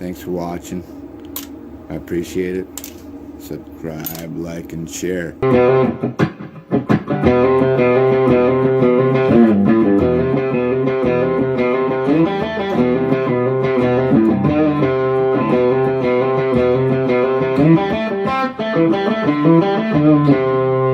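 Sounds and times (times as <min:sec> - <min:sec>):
distorted electric guitar music: 0:05.4 - 0:20.9.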